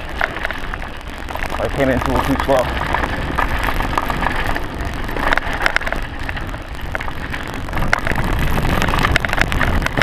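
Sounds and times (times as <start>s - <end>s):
bike knocking and rattling: 0.0s - 10.0s
bike tyres on dirt trail: 0.0s - 10.0s
wind noise on camera: 0.0s - 10.0s.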